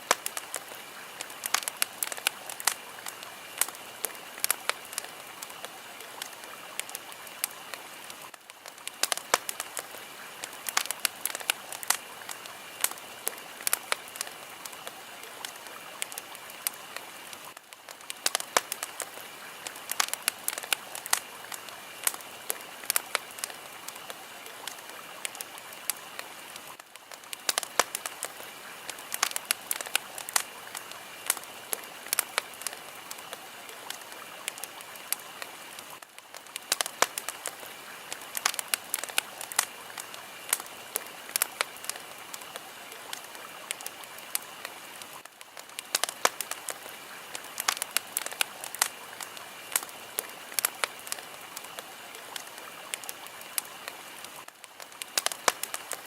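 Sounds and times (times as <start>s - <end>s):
fire crackling: 0.0s - 56.0s.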